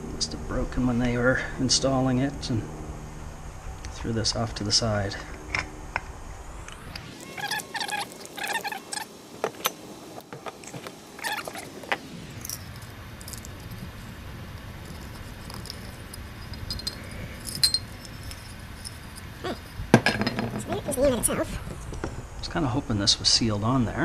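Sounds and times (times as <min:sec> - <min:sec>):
small metal parts clinking: 0:10.5 - 0:21.2.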